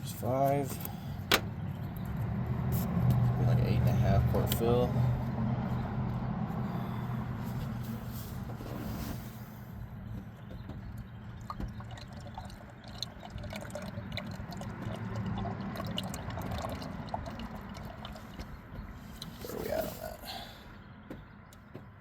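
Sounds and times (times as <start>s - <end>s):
oil glugging through funnel: 11.4s - 20.2s.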